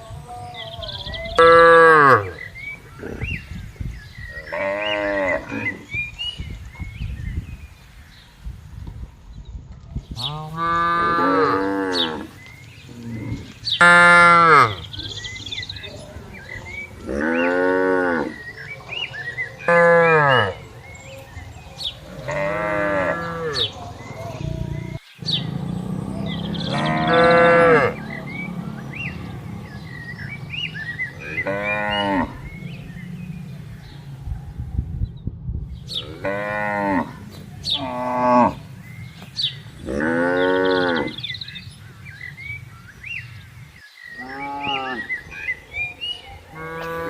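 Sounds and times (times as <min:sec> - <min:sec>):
cattle mooing: 0:10.3 - 0:12.4, 0:22.0 - 0:33.6, 0:35.9 - 0:38.7, 0:39.8 - 0:41.2, 0:46.5 - 0:47.0.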